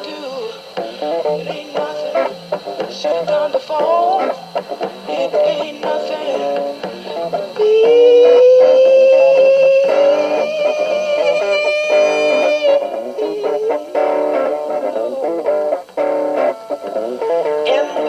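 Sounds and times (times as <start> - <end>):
rock band playing: 3.8 - 17.8
lead guitar bending note: 4.0 - 18.0.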